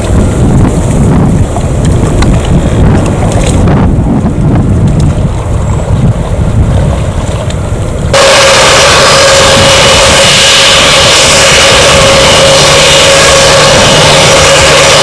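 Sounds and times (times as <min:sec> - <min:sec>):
low rumble: 0:00.0 - 0:15.0
wind buffeting microphone: 0:00.0 - 0:15.0
jet engines roaring: 0:07.5 - 0:15.0.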